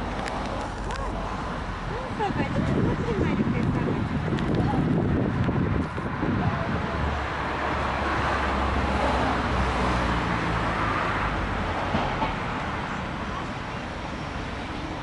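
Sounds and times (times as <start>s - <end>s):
road traffic rumble: 0.0s - 15.0s.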